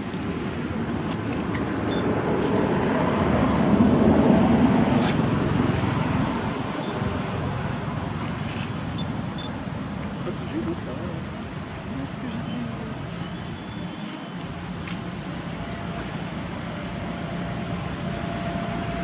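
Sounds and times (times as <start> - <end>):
low rumbling noise: 0.0 - 13.6
high-pitched insect drone: 0.0 - 19.0.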